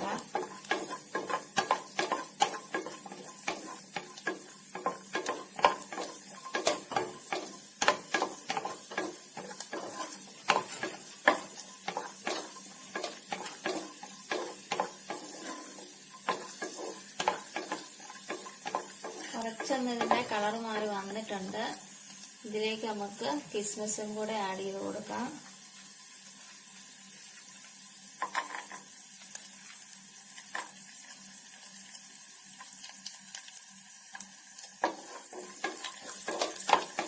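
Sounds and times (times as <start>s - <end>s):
spoon scraping nuts in pan: 0.0s - 21.6s, 28.2s - 28.9s, 34.1s - 37.0s
faint sizzle: 0.0s - 37.0s.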